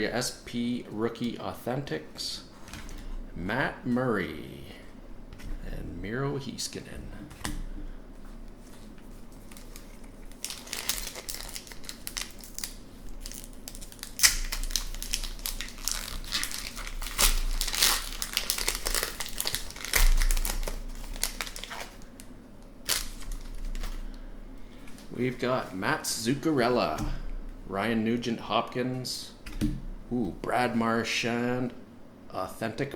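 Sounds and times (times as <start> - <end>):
foil wrapper crinkling and tearing: 9.4 - 24.1.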